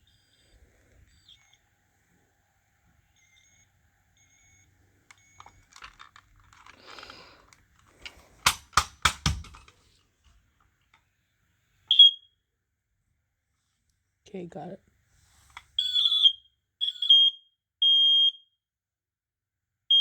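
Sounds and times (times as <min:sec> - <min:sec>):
smoke alarm clicks: 0:03.2 - 0:06.2, 0:15.5 - 0:18.3
high-pitched alarm beep: 0:15.8 - 0:17.3.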